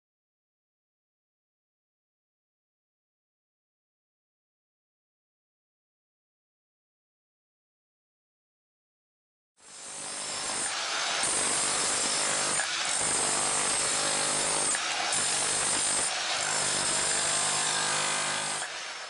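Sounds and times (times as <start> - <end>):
power tool motor hum with hiss: 9.6 - 19.0.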